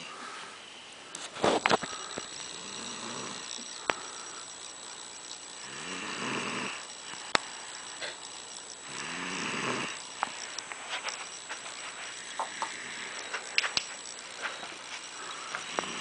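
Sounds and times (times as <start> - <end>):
small clicks: 0.9 - 16.0
man snoring: 1.7 - 4.4, 5.6 - 7.2, 8.8 - 10.0, 15.2 - 16.0
sharp click: 10.1 - 14.7.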